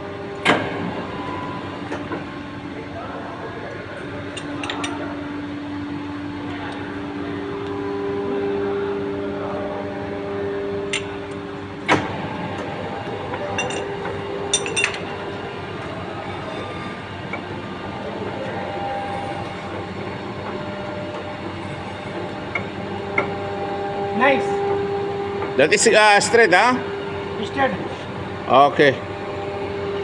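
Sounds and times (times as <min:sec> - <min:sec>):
machinery humming: 0:00.0 - 0:30.0
metal clinks and clanks: 0:13.6 - 0:13.9, 0:14.5 - 0:15.0.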